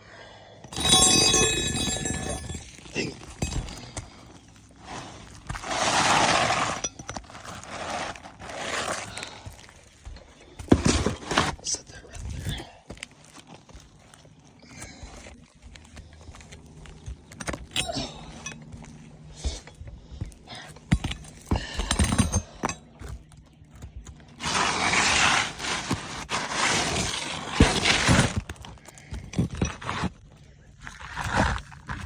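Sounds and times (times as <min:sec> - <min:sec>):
shingles knocking and clattering: 0:00.7 - 0:11.6, 0:20.7 - 0:30.3
rough scraping on shingles: 0:00.7 - 0:32.0.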